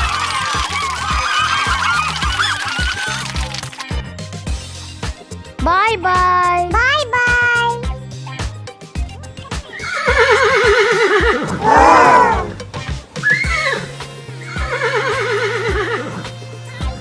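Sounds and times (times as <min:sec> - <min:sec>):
background music with steady beat: 0:00.0 - 0:17.0
horse whinnying: 0:09.8 - 0:12.6, 0:13.2 - 0:16.2.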